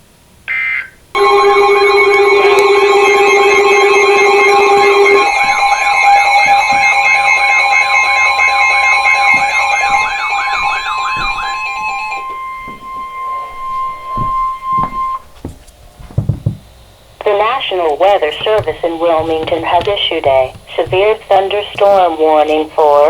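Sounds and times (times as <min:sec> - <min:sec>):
warbling electronic siren alarm: 0:00.5 - 0:15.5
steady high alert tone: 0:01.2 - 0:15.5, 0:17.2 - 0:23.0.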